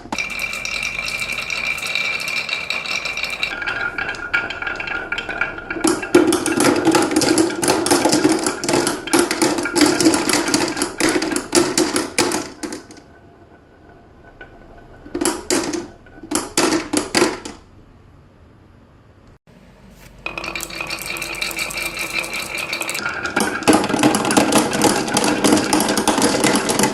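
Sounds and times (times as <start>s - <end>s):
marbles clattering down a run: 20.3s - 26.9s.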